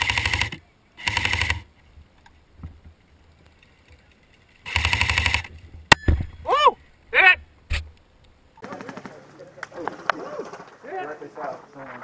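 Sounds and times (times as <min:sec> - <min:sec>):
airsoft gun full-auto burst: 0:00.0 - 0:01.6, 0:04.7 - 0:05.5.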